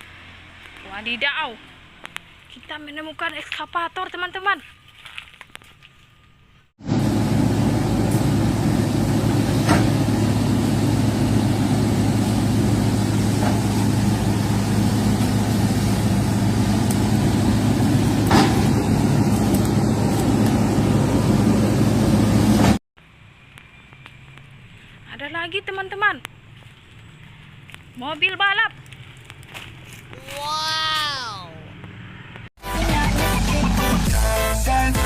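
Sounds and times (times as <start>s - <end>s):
heavy vehicle engine humming: 6.8s - 25.2s.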